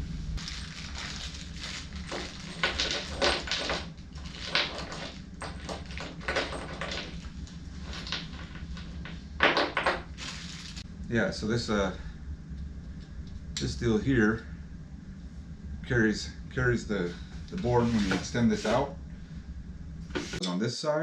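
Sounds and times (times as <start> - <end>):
parts knocking and rattling: 0.4 - 10.8.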